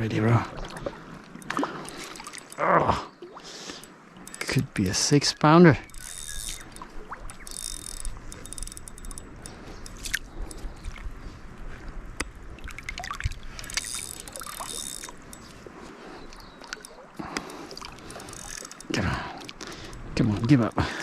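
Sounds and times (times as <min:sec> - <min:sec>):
water splashing: 0:00.0 - 0:11.1, 0:12.5 - 0:21.0
fishing reel clicking: 0:01.3 - 0:02.7, 0:03.7 - 0:11.0, 0:13.5 - 0:15.6, 0:16.3 - 0:21.0.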